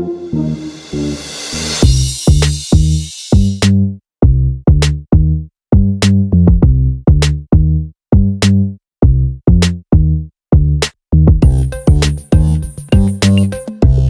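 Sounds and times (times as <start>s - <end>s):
electronic music with drum-machine beat: 11.4s - 14.0s.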